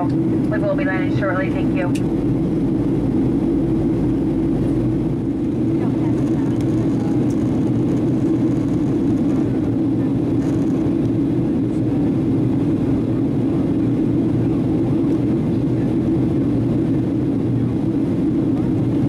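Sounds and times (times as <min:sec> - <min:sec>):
airplane cabin engine rumble: 0:00.0 - 0:19.0.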